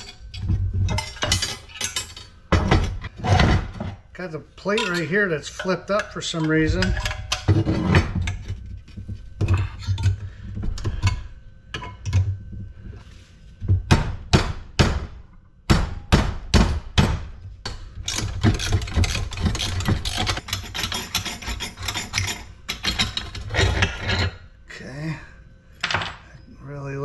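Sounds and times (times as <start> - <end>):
tools and metal parts clattering: 0.0 - 4.0, 4.6 - 8.6, 17.7 - 24.4, 25.8 - 26.3.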